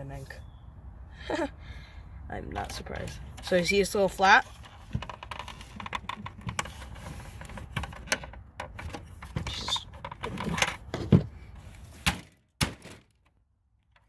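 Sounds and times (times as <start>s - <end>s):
printer parts clicking and rattling: 4.6s - 11.2s.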